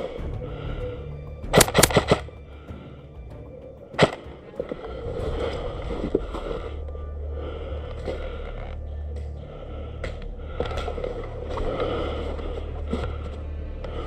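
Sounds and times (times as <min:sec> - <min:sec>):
background music: 0:00.0 - 0:14.0
airsoft gun shots: 0:01.5 - 0:02.2.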